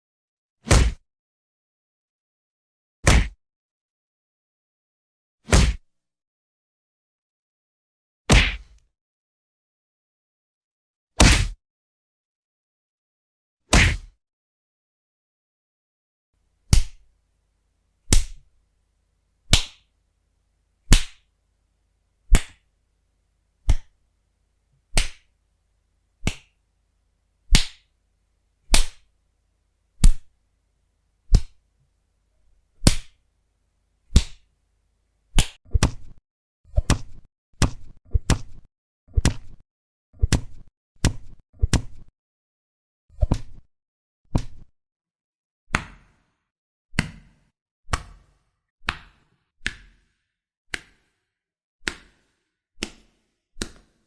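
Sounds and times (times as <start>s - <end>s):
punches and slaps: 0.6s - 1.0s, 3.0s - 3.4s, 5.4s - 5.9s, 8.3s - 8.8s, 11.2s - 11.6s, 13.7s - 14.2s, 16.7s - 17.0s, 18.1s - 18.4s, 19.5s - 19.9s, 20.9s - 21.2s, 22.3s - 22.6s, 23.6s - 23.9s, 24.9s - 25.3s, 26.2s - 26.6s, 27.5s - 27.9s, 28.7s - 29.1s, 30.0s - 30.3s, 31.3s - 31.6s, 32.8s - 33.2s, 34.1s - 34.4s, 35.4s - 36.2s, 47.0s - 47.2s.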